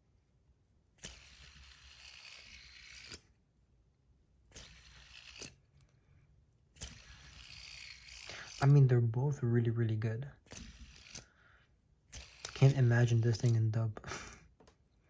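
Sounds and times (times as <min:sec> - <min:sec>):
fidget spinner whirring: 0:00.9 - 0:03.4, 0:04.4 - 0:06.0, 0:06.7 - 0:08.8, 0:10.4 - 0:11.4, 0:12.0 - 0:13.6
fidget spinner clicks: 0:12.2 - 0:13.6.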